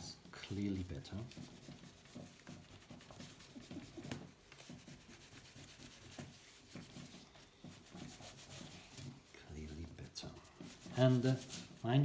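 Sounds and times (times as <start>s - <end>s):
cloth rubbing on metal: 0.0s - 12.0s.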